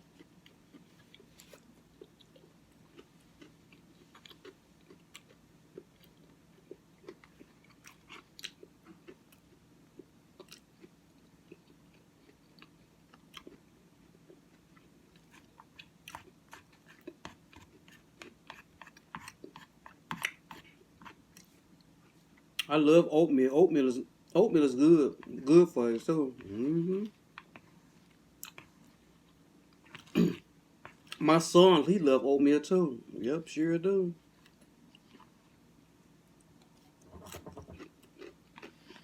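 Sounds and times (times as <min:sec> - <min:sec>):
chewing and mouth clicks: 0:00.2 - 0:13.6, 0:27.4 - 0:28.9.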